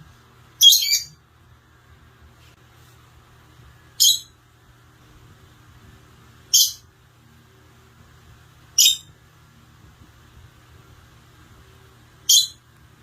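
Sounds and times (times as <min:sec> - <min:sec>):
parrot calling: 0:00.6 - 0:01.2, 0:04.0 - 0:04.4, 0:06.5 - 0:06.9, 0:08.7 - 0:09.1, 0:12.2 - 0:12.6.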